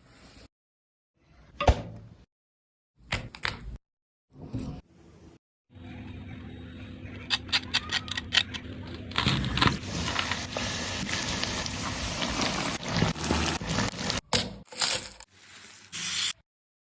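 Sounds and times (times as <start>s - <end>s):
food deep-frying in hot oil: 9.6s - 14.2s.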